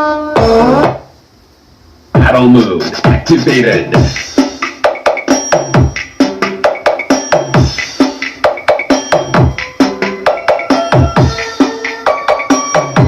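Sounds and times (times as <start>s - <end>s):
electronic dance music: 0.0s - 1.1s, 2.2s - 13.0s
deep kick drums: 3.0s - 3.3s.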